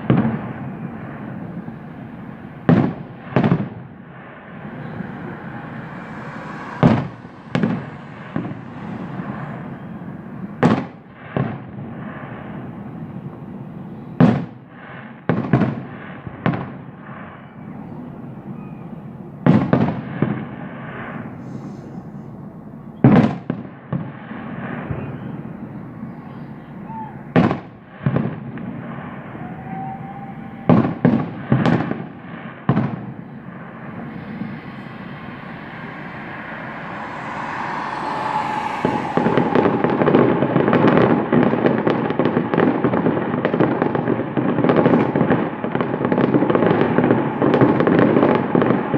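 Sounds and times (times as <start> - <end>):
fireworks crackling: 0.0 - 12.6, 30.7 - 48.9
fireworks bangs: 0.0 - 13.0, 14.2 - 17.6, 23.0 - 25.4, 27.3 - 48.9.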